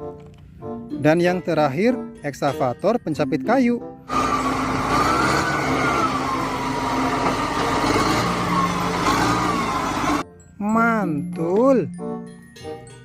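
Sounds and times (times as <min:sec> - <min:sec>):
truck engine running: 0:04.1 - 0:10.2.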